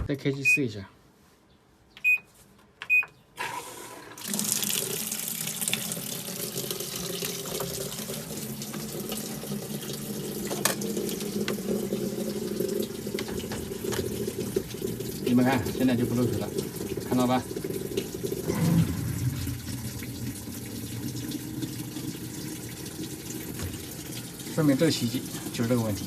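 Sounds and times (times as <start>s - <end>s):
short electronic beep: 0.4s - 0.7s
water rushing into drum: 3.5s - 26.0s.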